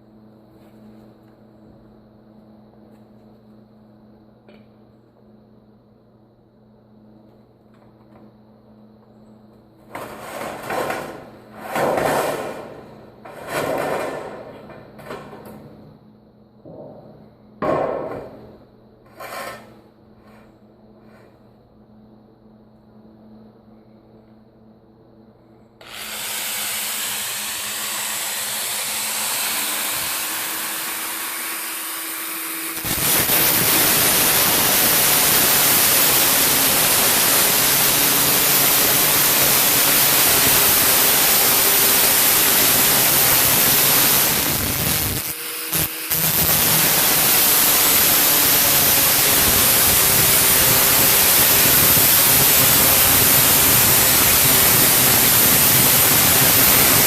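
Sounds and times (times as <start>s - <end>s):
power saw cutting metal gutter: 25.8s - 57.0s.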